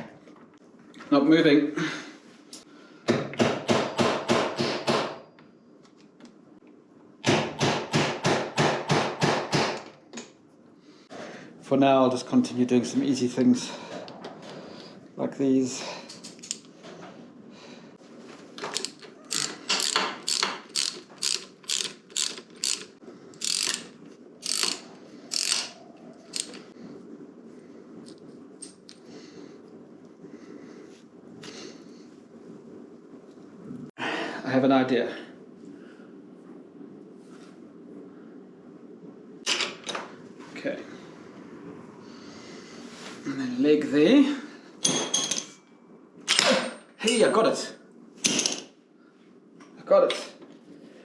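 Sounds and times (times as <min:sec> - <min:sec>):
socket ratchet wrench clicking: 0:18.8 - 0:25.7, 0:26.3 - 0:26.6.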